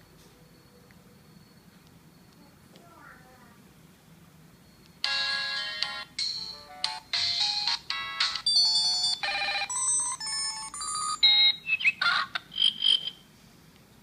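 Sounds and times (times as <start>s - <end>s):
phone electronic ringtone melody: 5.0s - 12.2s.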